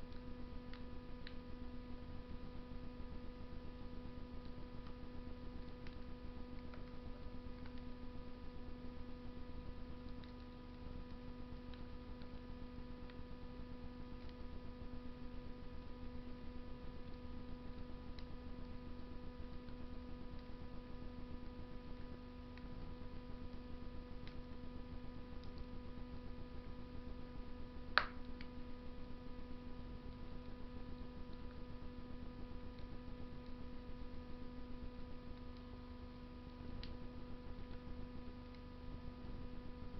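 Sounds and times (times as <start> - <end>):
wood fire crackling: 0.0 - 39.5
steady hum: 0.0 - 39.9
burning wood popping: 27.9 - 28.5.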